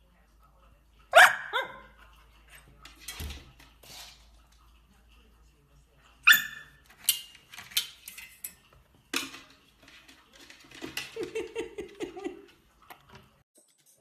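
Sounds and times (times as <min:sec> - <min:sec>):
dog bowl clattering: 0:06.8 - 0:12.6.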